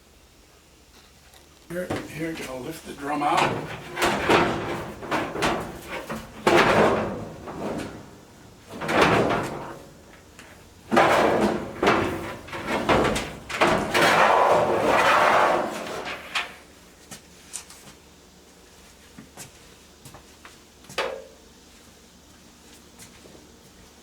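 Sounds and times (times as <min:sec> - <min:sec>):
metal drum bumping against housing: 0:01.8 - 0:16.7.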